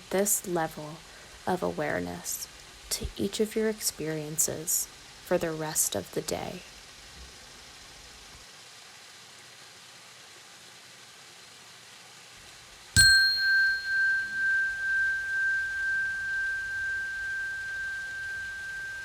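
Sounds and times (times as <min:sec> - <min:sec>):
faint steady hiss: 0:00.0 - 0:19.0
bell ringing: 0:13.0 - 0:19.0.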